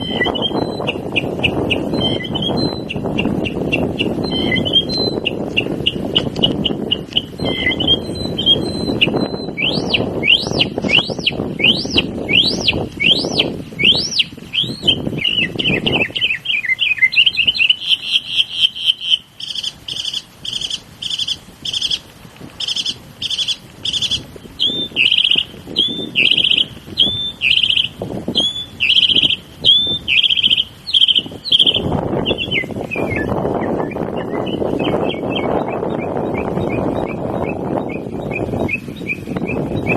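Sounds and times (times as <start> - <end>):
mockingbird singing: 0.0 - 39.9.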